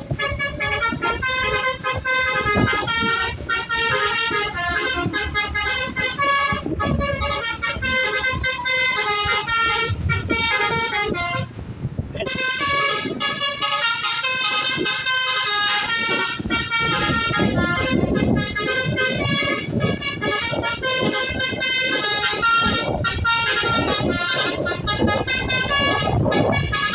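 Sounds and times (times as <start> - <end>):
musical air horn melody: 0.1 - 11.6, 12.2 - 26.9.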